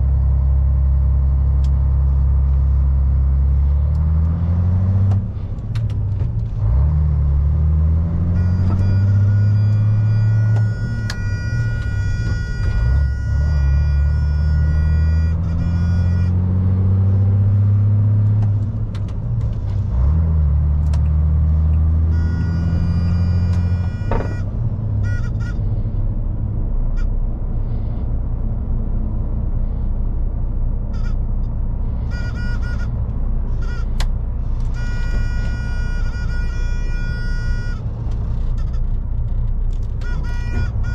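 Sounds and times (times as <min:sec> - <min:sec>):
lorry diesel engine accelerating: 0:00.0 - 0:40.9
short high squeaks: 0:08.2 - 0:16.4, 0:22.0 - 0:25.9, 0:30.9 - 0:40.9.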